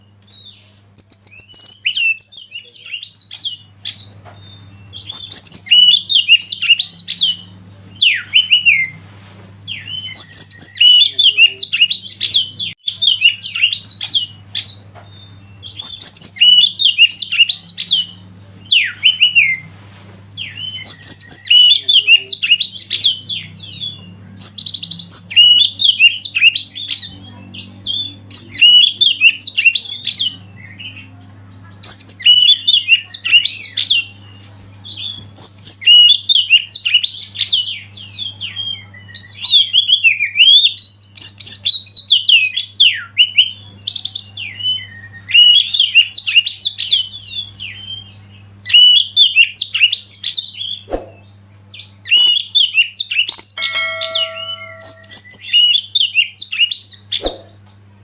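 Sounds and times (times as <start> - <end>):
songbird singing: 0.0 - 58.0
steady low hum: 50.0 - 52.7, 56.7 - 58.0.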